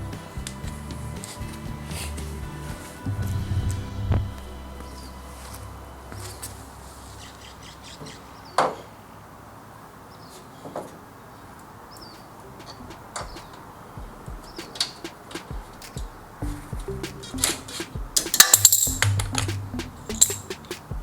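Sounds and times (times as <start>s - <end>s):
faint bird chirps: 11.3s - 15.1s.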